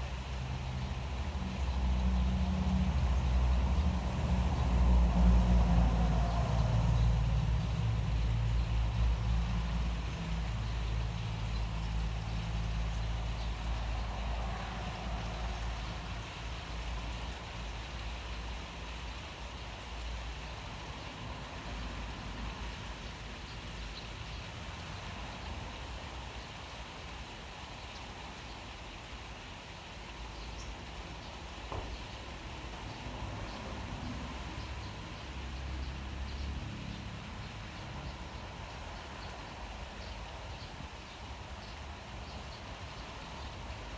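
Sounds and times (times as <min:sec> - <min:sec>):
vehicle rumble: 0:00.0 - 0:19.0
steady rain: 0:00.0 - 0:43.9.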